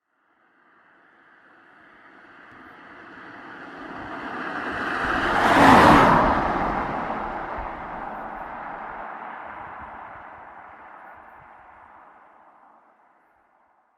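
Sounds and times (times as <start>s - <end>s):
car driving past: 2.0s - 12.2s.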